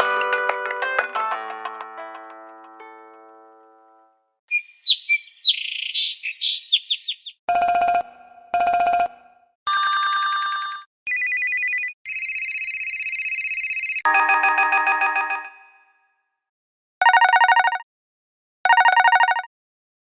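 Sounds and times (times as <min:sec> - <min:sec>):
high chirping trill: 0:04.5 - 0:07.4
phone rings: 0:09.7 - 0:15.9, 0:17.0 - 0:17.8, 0:18.7 - 0:19.5
electronic ringtones: 0:14.1 - 0:15.8.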